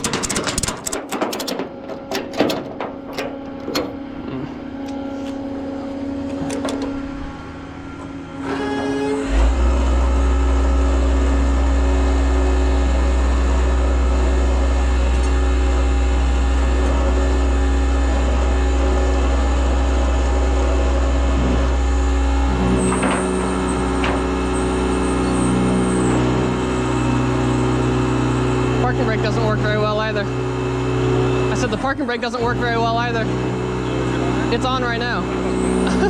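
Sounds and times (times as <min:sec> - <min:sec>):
sharp clicks: 0:00.0 - 0:01.6
tow truck engine drone: 0:00.0 - 0:36.0.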